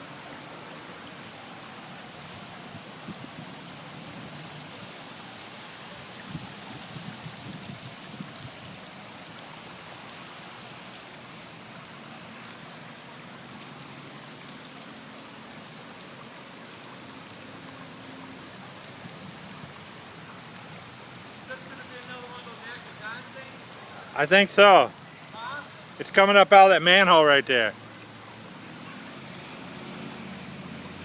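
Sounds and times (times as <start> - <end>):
floodwater rushing: 0.0 - 31.0.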